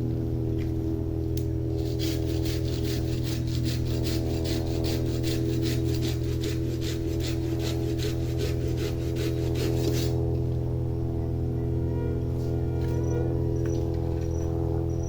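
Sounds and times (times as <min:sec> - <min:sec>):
low drone of sustained tones: 0:00.0 - 0:15.0
hand tool strokes on wood: 0:01.8 - 0:10.2.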